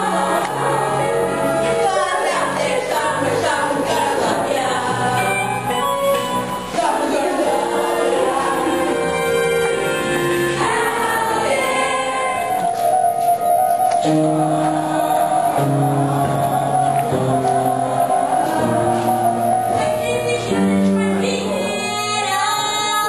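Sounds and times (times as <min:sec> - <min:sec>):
chorus singing a show tune: 0:00.0 - 0:23.0
musical accompaniment: 0:00.0 - 0:23.0.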